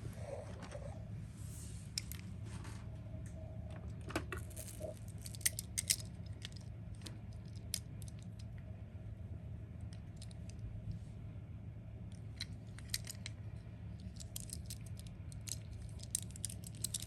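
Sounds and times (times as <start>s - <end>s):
steady low hum: 0.0s - 17.0s
toy cars clicking together: 4.4s - 8.5s, 12.4s - 13.4s, 14.0s - 17.0s.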